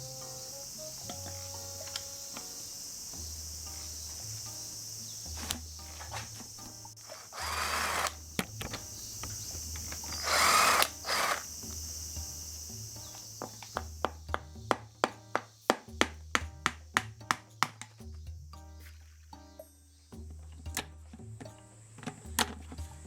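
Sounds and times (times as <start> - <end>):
background music: 0.0 - 23.0
high insect chirring: 0.0 - 23.0
power drill bursts: 7.0 - 8.2, 9.4 - 11.8
light tool clicks: 7.1 - 11.8.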